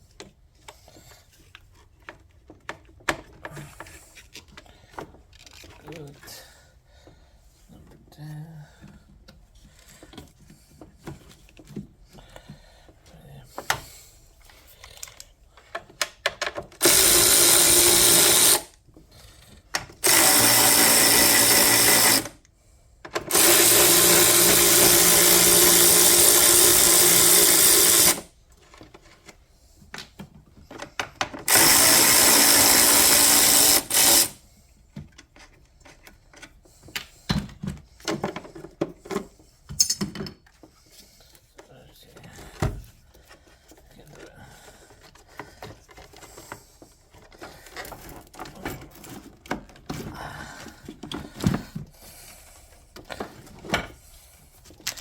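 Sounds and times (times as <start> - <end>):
power tool driving bolts: 16.3 - 18.8, 19.8 - 22.4, 23.1 - 28.3, 31.3 - 34.4.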